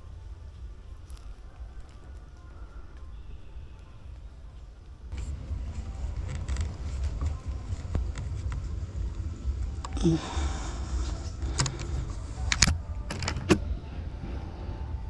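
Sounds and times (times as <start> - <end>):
low steady rumble: 0.0 - 15.0
handling noise clicks and knocks: 1.0 - 3.1, 5.1 - 10.0, 11.4 - 13.6.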